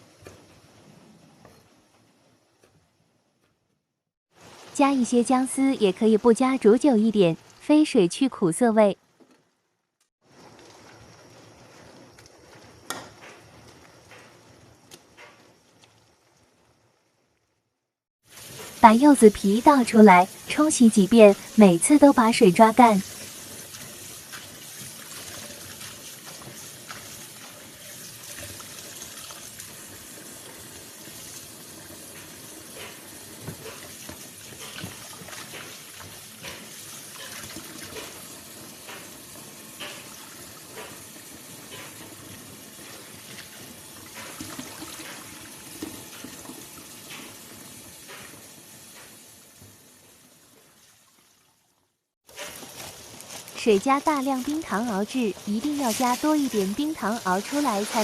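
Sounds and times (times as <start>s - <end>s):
running water: 33.4s - 51.9s, 52.5s - 58.0s.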